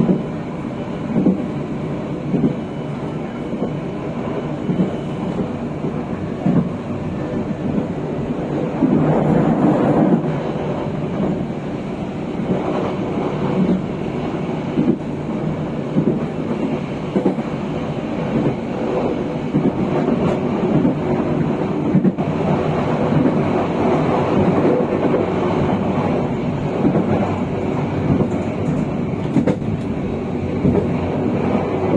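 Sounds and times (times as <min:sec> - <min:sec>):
train wheels rumbling on rail: 0:00.0 - 0:31.9
clacks over rail joints: 0:14.7 - 0:17.6, 0:18.3 - 0:31.9.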